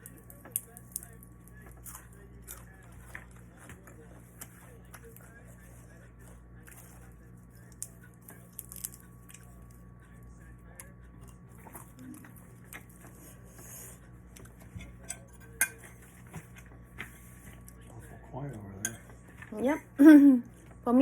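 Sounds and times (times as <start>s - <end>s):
chewing: 0.0s - 9.9s, 10.7s - 15.0s
cutlery and dishes clinking: 14.6s - 16.6s.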